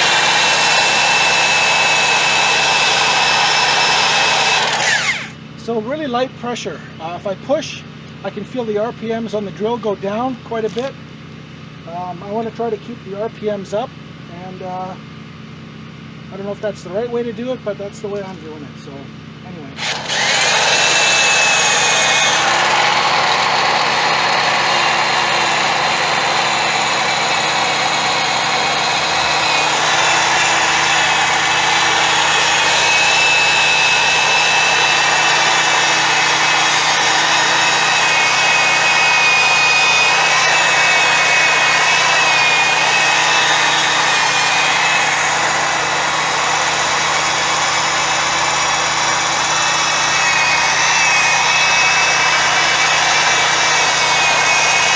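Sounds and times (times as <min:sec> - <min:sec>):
electric drill motor whine: 0:00.0 - 0:05.8, 0:19.5 - 0:54.9.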